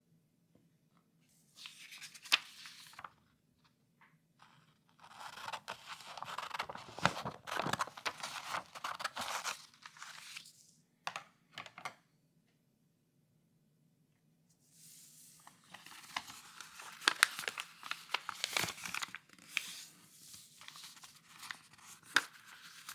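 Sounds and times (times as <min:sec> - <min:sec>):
paper rustling and crackling: 0:01.6 - 0:03.2, 0:04.4 - 0:10.5, 0:14.8 - 0:22.9.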